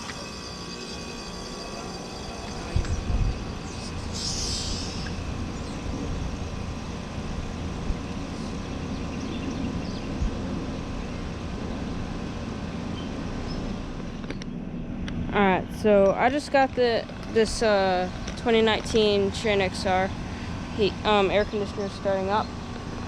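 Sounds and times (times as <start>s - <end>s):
compressor low hum: 0.0s - 23.0s
condenser fan whoosh: 0.0s - 23.0s.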